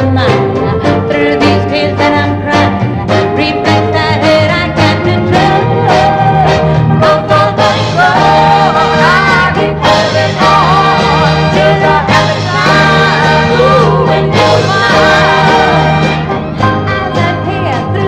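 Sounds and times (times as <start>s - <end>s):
woman singing: 0.0s - 6.4s, 16.9s - 18.0s
band playing: 0.0s - 18.0s
steady bass line: 0.0s - 18.0s.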